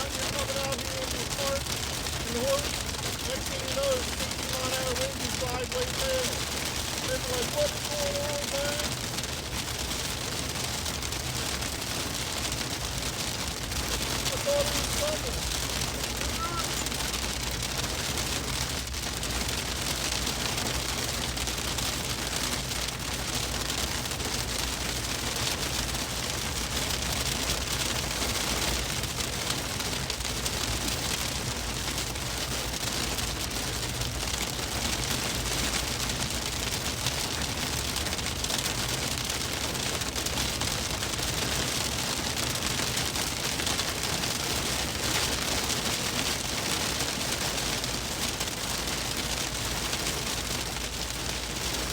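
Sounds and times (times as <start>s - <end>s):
hail pelting car roof: 0.0s - 51.9s
low road rumble: 0.0s - 51.9s.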